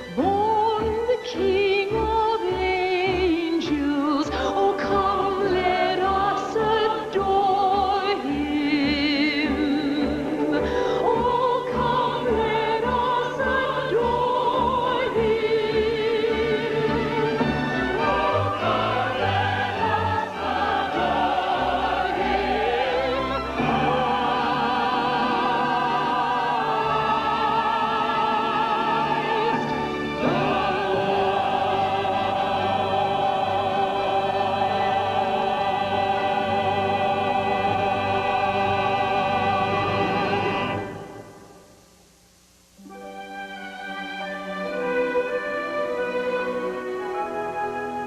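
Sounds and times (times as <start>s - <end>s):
orchestral accompaniment: 0.0s - 41.2s, 42.8s - 48.0s
operatic singing: 0.0s - 41.6s.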